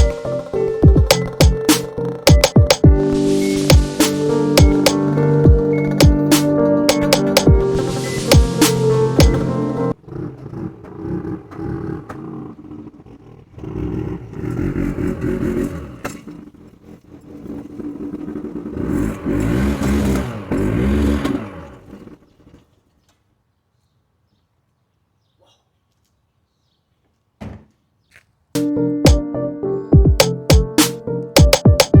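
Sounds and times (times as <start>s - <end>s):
car engine revving: 7.7s - 22.2s.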